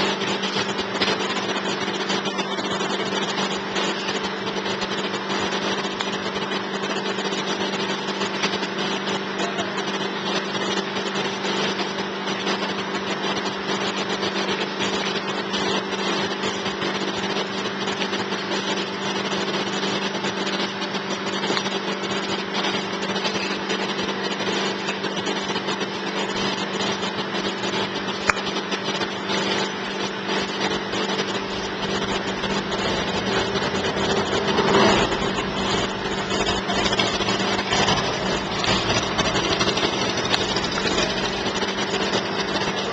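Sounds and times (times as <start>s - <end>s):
small motor humming: 21.4s - 42.9s.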